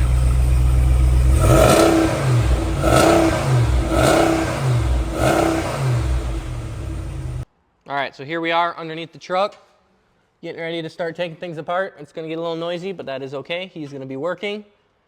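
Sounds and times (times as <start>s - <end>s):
truck engine idling and revving: 0.0s - 7.4s.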